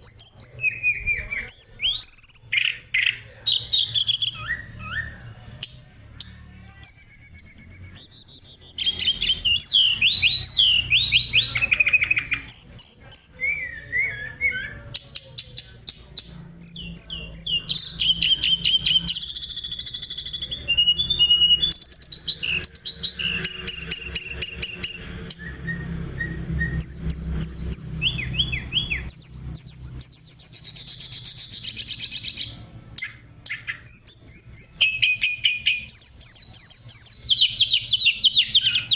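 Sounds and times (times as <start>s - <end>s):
songbird singing varied song: 0.0s - 38.9s.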